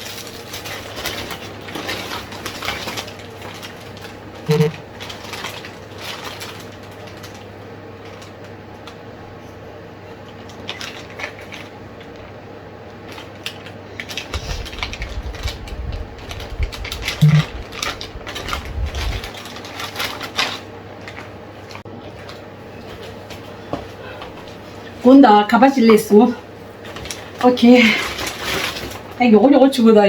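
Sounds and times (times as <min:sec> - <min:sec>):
packaging rustling and clicking: 0:13.1 - 0:21.3
low rumble of handling: 0:14.4 - 0:19.3.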